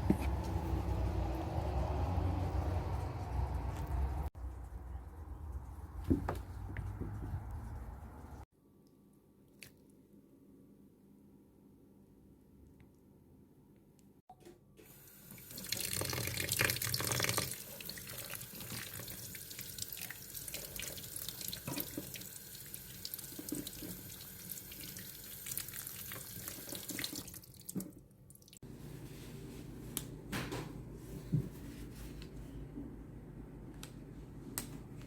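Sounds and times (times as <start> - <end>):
tap water running into sink: 14.9 - 27.9.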